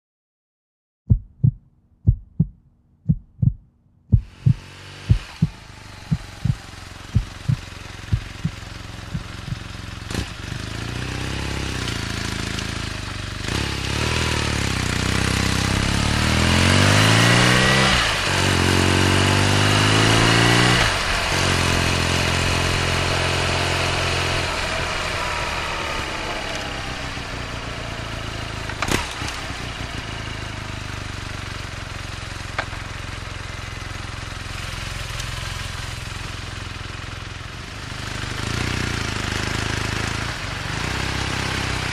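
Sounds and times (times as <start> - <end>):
deep regular thumps: 1.1 - 9.8
motorcycle engine revving: 4.1 - 41.9.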